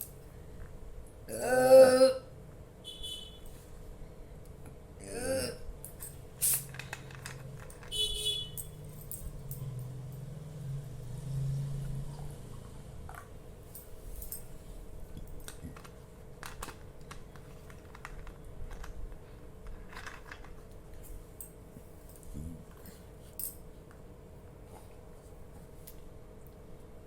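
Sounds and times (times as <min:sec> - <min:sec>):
faint steady hum: 0:00.0 - 0:27.0
small objects clicking and tapping: 0:15.2 - 0:20.8.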